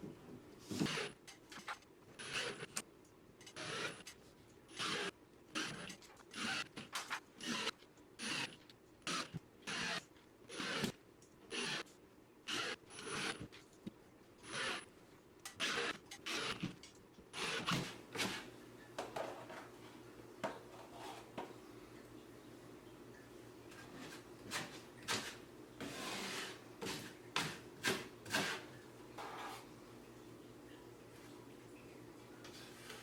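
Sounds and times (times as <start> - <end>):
hand tool scraping drywall: 17.4 - 18.5, 20.7 - 21.5, 23.8 - 29.7.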